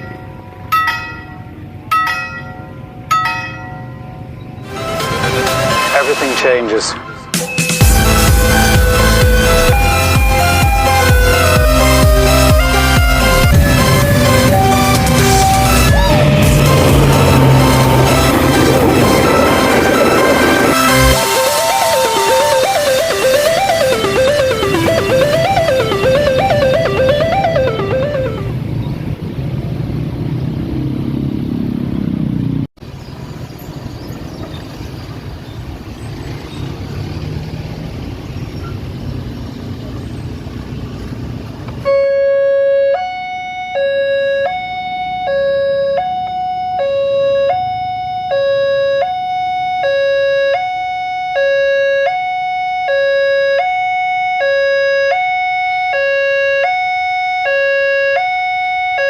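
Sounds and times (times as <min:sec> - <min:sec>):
two-tone level crossing siren: 0:07.8 - 0:28.6, 0:41.8 - 0:59.0.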